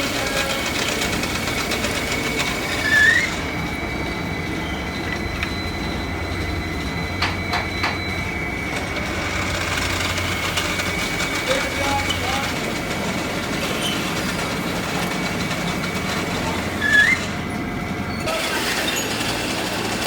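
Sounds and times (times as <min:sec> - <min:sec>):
workshop machinery whining: 0:00.0 - 0:20.0
short rising squeal: 0:02.1 - 0:10.7, 0:16.7 - 0:20.0.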